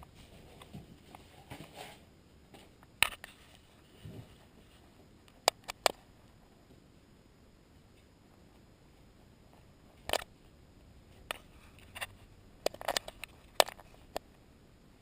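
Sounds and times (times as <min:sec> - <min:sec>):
sharp clicks and knocks: 0:11.3 - 0:14.3.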